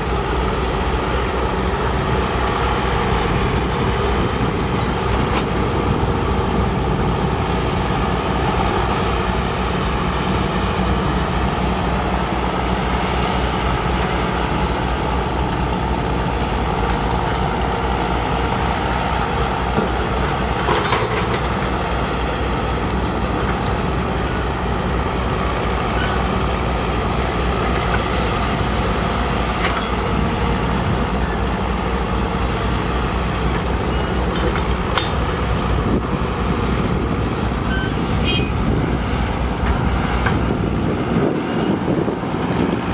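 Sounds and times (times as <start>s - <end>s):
diesel construction machinery running: 0.0s - 42.9s.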